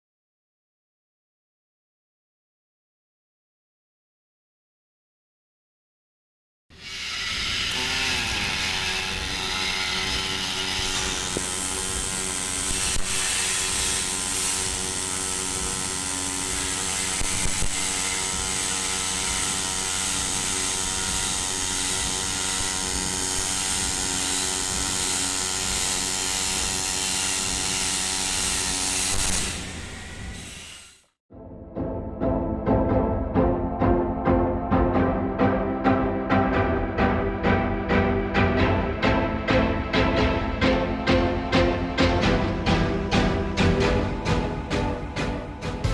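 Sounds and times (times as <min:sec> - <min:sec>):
welding arc buzzing hum: 0:06.8 - 0:31.0.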